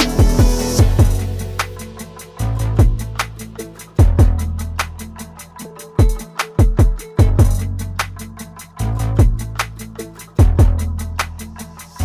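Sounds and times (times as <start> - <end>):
booming kick drums: 0.0 - 1.3, 2.8 - 3.1, 4.0 - 4.4, 9.2 - 9.4, 10.4 - 10.8
sustained bass line: 0.0 - 5.4, 7.2 - 11.7
hi-hat ticks: 0.0 - 12.0
hip-hop beat: 0.0 - 12.0.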